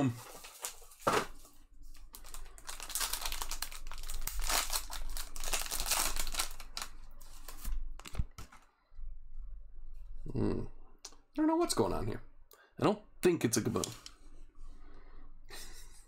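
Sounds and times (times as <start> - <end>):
wrapping crackling and ripping: 0.0 - 1.1, 1.9 - 8.4.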